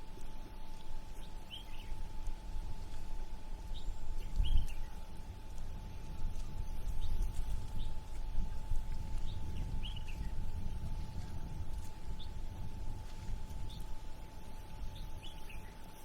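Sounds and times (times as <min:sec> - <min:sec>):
faint steady hum: 0:00.0 - 0:16.0
bird chirps: 0:01.4 - 0:02.0, 0:03.7 - 0:05.0, 0:09.2 - 0:10.3, 0:14.9 - 0:16.0.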